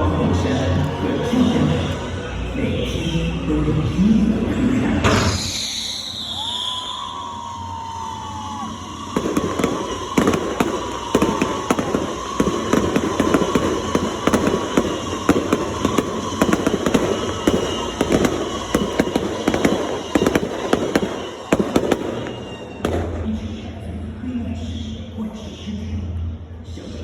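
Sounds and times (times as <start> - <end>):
fireworks bangs and crackles: 6.2 - 24.0.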